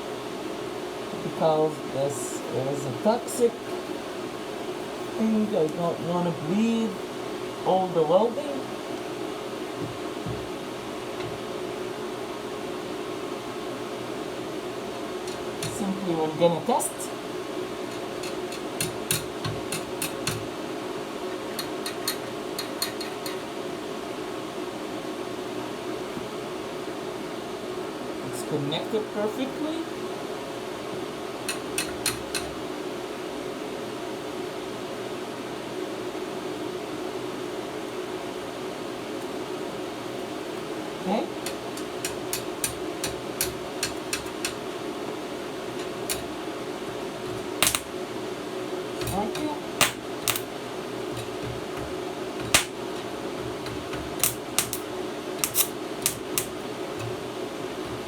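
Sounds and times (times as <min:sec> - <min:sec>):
fan whirring hum: 0:00.0 - 0:58.0
sharp welding snaps: 0:31.5 - 0:32.6, 0:41.4 - 0:44.6, 0:45.7 - 0:46.5, 0:47.2 - 0:48.0, 0:48.9 - 0:58.0
sharp clicks: 0:47.3 - 0:47.9, 0:49.0 - 0:50.5, 0:54.2 - 0:54.8, 0:55.4 - 0:57.2.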